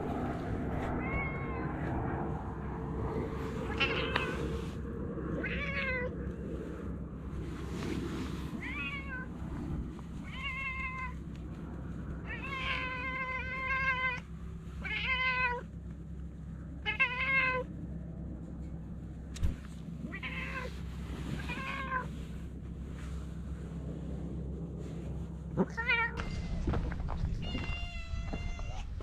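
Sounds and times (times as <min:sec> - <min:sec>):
steady low hum: 0:00.0 - 0:29.0
cat meowing: 0:01.0 - 0:01.8, 0:03.7 - 0:04.5, 0:05.4 - 0:06.1, 0:08.6 - 0:09.3, 0:10.2 - 0:11.2, 0:12.2 - 0:14.2, 0:16.8 - 0:17.7, 0:20.1 - 0:20.7, 0:21.4 - 0:22.1, 0:25.6 - 0:26.6, 0:27.3 - 0:29.0.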